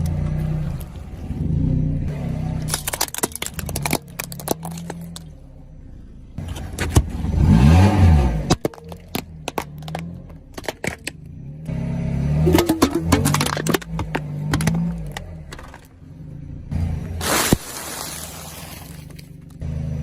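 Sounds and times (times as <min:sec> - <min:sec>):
car engine revving: 0:00.0 - 0:03.1, 0:03.8 - 0:17.6
objects cracking and crunching: 0:02.6 - 0:05.4, 0:12.8 - 0:16.0, 0:16.9 - 0:19.6.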